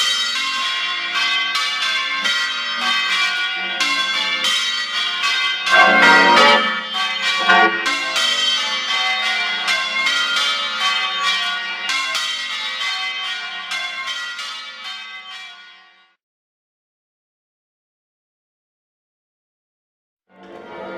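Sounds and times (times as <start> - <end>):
church bells ringing: 0.0 - 16.2, 20.4 - 20.9.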